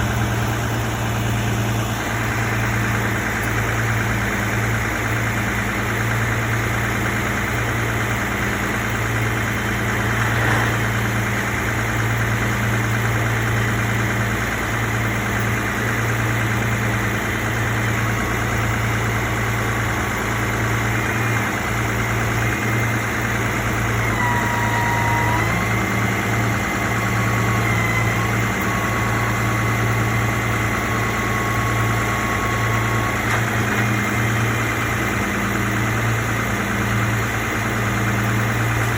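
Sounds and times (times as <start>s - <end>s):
vehicle engine idling: 0.0s - 38.9s
faint thin high tone: 24.2s - 25.6s.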